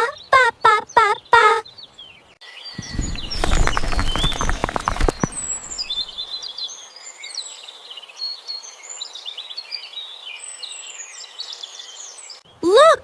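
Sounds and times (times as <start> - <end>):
small birds chirping: 0.9 - 7.5.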